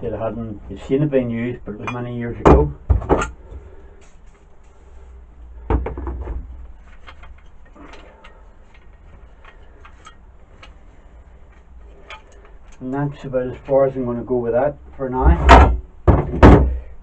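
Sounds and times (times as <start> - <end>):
metal parts clicking and knocking: 6.7 - 12.8.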